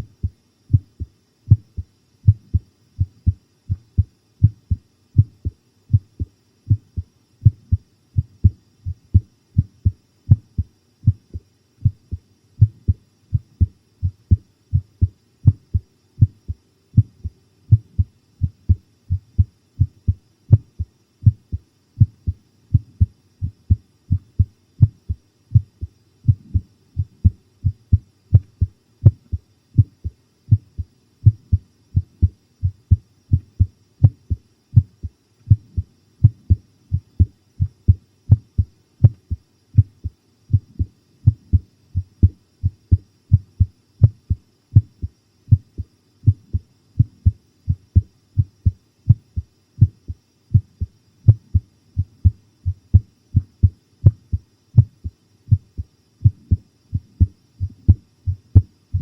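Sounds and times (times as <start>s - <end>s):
pounding heartbeat: 0.0s - 59.0s.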